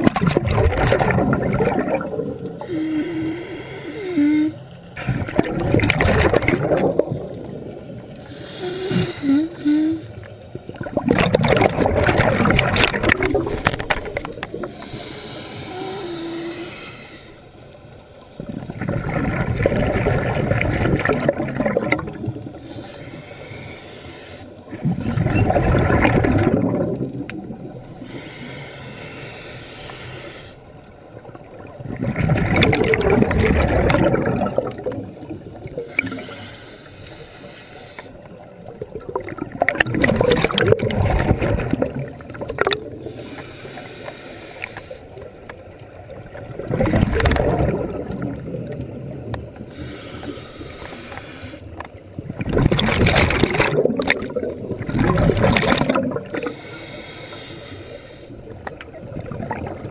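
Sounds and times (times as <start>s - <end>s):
underwater bubble bursts: 0.0s - 3.4s, 4.0s - 16.8s, 18.2s - 22.9s, 24.7s - 28.2s, 31.0s - 36.3s, 38.2s - 43.3s, 45.6s - 50.4s, 51.8s - 56.6s, 58.4s - 59.9s
regulator hiss: 49.8s - 51.7s.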